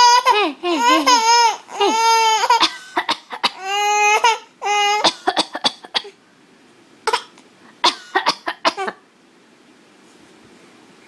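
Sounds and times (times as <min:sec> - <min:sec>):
baby crying: 0:00.0 - 0:02.7, 0:03.4 - 0:05.2
baby coughing: 0:00.0 - 0:06.2, 0:07.1 - 0:09.0.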